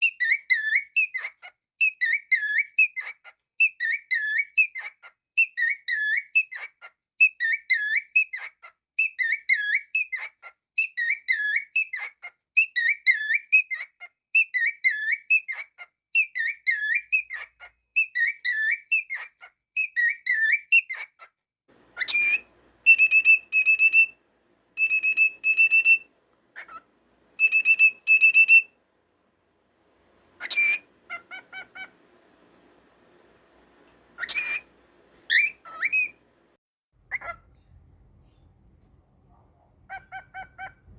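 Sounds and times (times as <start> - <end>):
cockatiel whistling: 21.8 - 28.8, 30.2 - 32.2, 33.0 - 36.3, 37.1 - 37.5.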